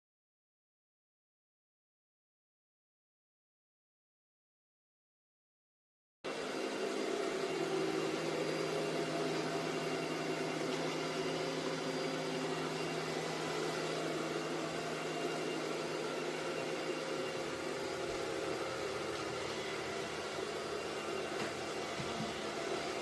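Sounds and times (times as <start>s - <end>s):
robot vacuum whirring: 6.3s - 23.0s.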